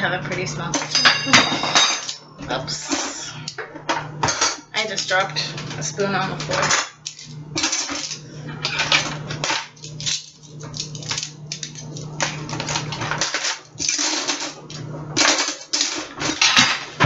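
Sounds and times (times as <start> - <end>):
steady low hum: 0.0 - 17.0
dishes and cutlery clattering: 0.8 - 2.2.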